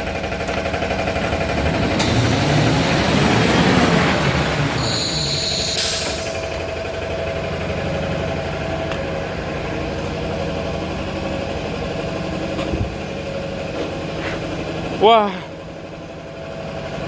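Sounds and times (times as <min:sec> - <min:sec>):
rewinding machine humming: 0:00.0 - 0:15.0
brief hiss: 0:04.9 - 0:06.4.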